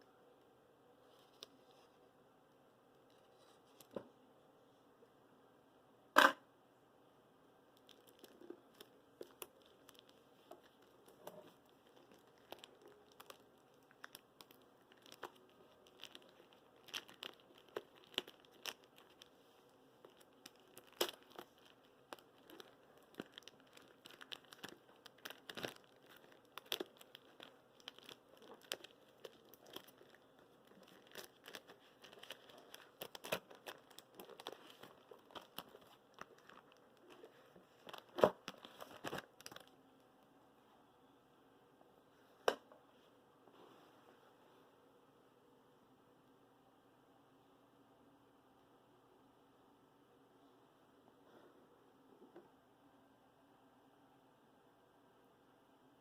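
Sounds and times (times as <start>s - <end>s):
packaging crinkling: 7.8s - 39.8s.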